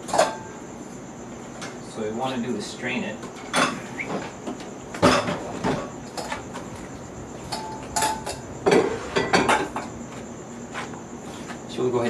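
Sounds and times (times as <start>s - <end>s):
kitchenware knocking and clinking: 5.0s - 6.4s, 7.5s - 9.9s.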